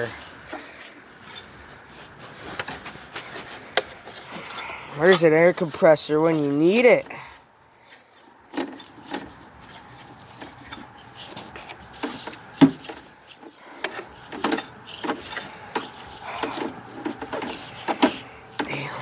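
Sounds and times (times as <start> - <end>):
scraping and brushing debris: 0.0 - 19.0.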